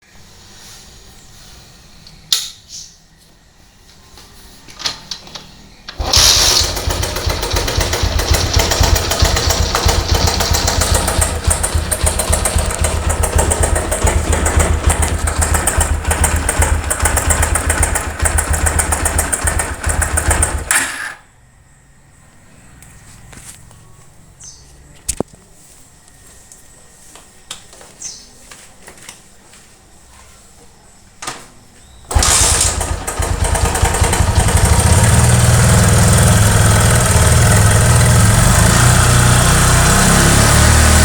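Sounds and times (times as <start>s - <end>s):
motorcycle engine clattering: 5.9s - 20.9s, 32.1s - 41.0s.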